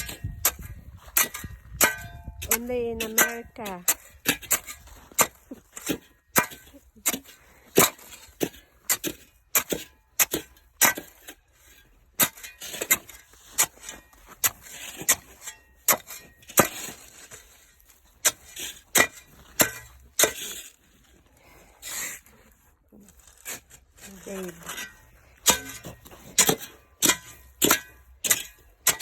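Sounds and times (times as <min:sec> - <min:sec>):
ice crust cracking and crunching: 0:22.2 - 0:25.5.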